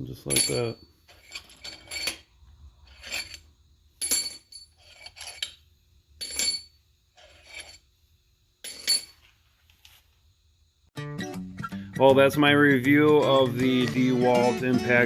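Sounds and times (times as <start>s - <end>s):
steel parts clinking: 0.2s - 5.6s, 6.2s - 7.8s, 8.6s - 9.3s.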